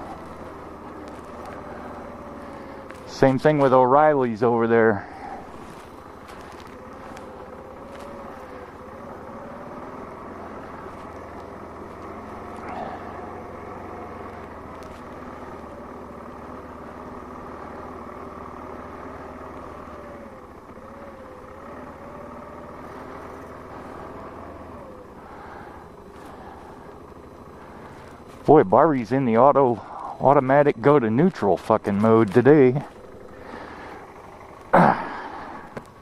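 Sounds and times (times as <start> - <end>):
car engine inside cabin: 0.0 - 36.0
road noise: 0.0 - 36.0.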